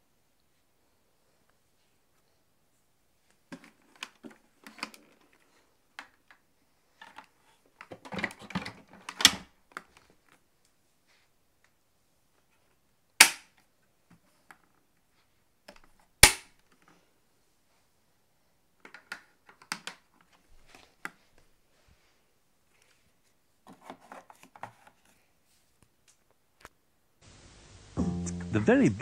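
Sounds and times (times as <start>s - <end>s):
plastic clicks and rattles: 3.5s - 5.4s, 7.0s - 10.4s, 18.8s - 21.2s
plastic parts snapping: 7.0s - 10.0s, 13.2s - 13.6s, 15.7s - 16.7s, 18.8s - 20.1s.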